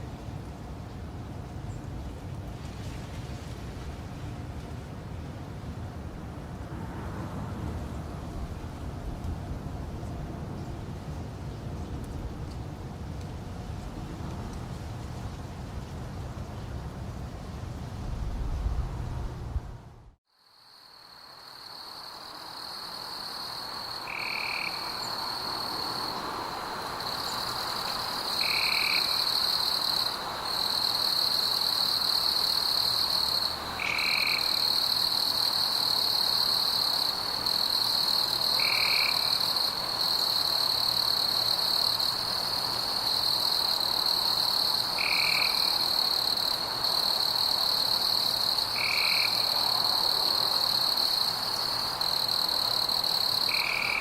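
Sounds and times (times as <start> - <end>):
high insect trill: 20.3 - 54.0
frog call: 24.0 - 25.6, 33.4 - 35.0, 38.4 - 39.5, 45.0 - 45.9, 48.6 - 49.6, 53.3 - 54.0.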